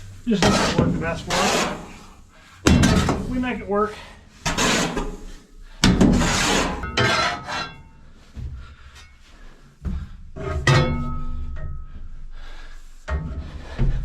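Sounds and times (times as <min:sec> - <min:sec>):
shovel scraping grain in metal bin: 0:00.3 - 0:02.2, 0:04.5 - 0:05.4, 0:06.2 - 0:07.6
faint metallic ring: 0:10.5 - 0:12.1.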